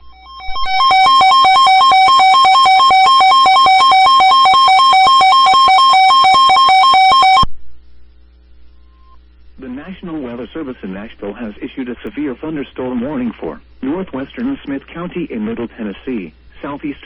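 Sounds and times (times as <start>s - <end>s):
faint low hum: 0.0s - 17.0s.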